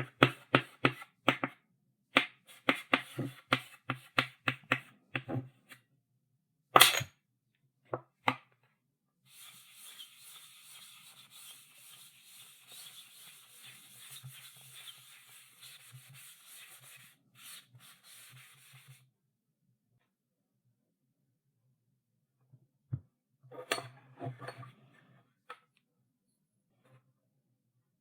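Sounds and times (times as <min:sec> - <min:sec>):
chalk tapping on chalkboard: 0:00.0 - 0:01.6, 0:02.2 - 0:05.4
chalk scratching on chalkboard: 0:09.3 - 0:19.0.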